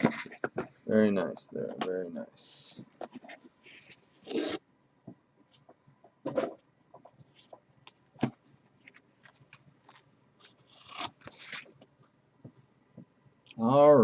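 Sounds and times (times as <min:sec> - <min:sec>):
plastic cases clicking and knocking: 0:00.0 - 0:00.8
plastic rubbing scrapes: 0:03.1 - 0:04.6
plastic sliding scrape: 0:03.2 - 0:04.6.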